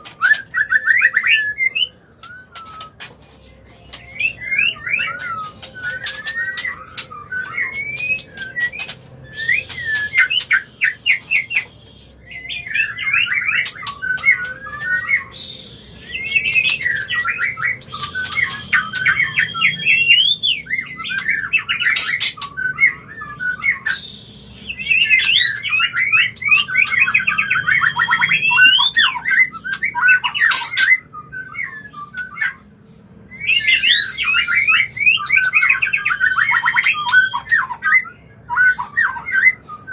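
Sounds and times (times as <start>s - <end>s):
songbird whistling song: 0.0s - 39.9s
bird harsh buzzy chatter: 5.1s - 12.2s, 13.6s - 20.6s.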